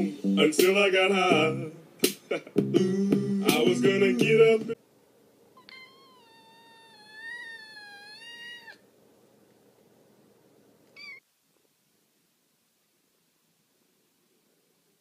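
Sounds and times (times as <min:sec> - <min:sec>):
cat meowing: 0:05.6 - 0:08.8, 0:10.9 - 0:11.2.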